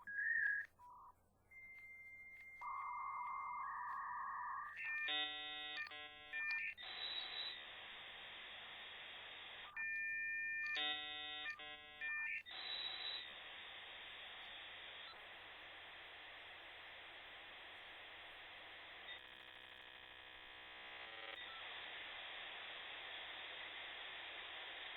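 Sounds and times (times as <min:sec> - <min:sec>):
dial-up modem tones: 0:00.0 - 0:13.5
modem hiss: 0:00.0 - 0:24.9.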